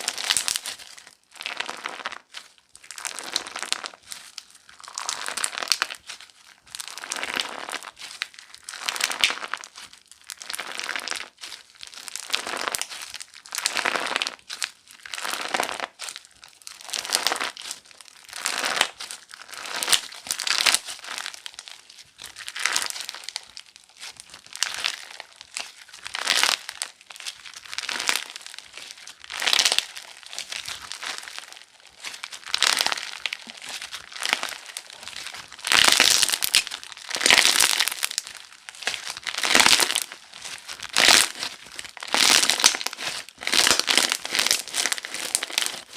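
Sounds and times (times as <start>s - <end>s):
crunchy slime crackling: 0.0s - 45.9s.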